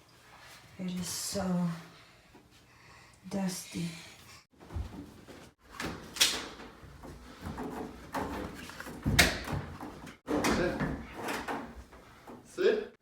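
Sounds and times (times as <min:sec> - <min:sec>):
knocks and bumps: 0:06.7 - 0:12.4.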